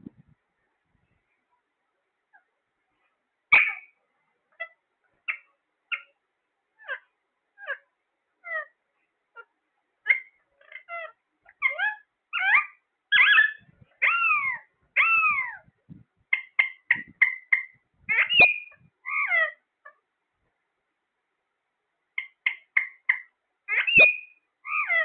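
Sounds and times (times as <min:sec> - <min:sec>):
parrot chirps and squawks: 0:03.5 - 0:06.2, 0:06.8 - 0:15.7, 0:16.3 - 0:20.0, 0:22.1 - 0:25.0.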